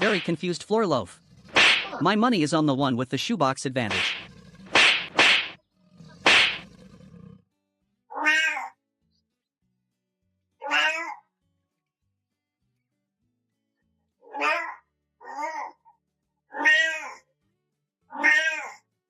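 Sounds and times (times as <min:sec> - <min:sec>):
cat hissing: 0:01.1 - 0:02.0, 0:03.9 - 0:07.4
cat meowing: 0:08.1 - 0:08.7, 0:10.6 - 0:11.2, 0:14.3 - 0:15.8, 0:16.5 - 0:17.2, 0:18.1 - 0:18.8.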